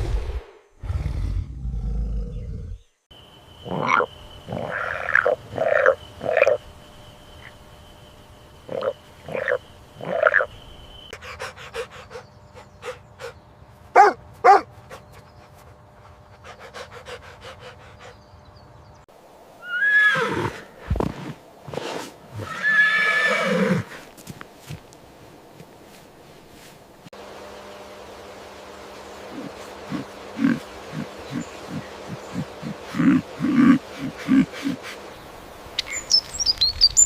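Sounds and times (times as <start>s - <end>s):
horse whinnying: 19.6s - 20.7s, 22.4s - 24.0s.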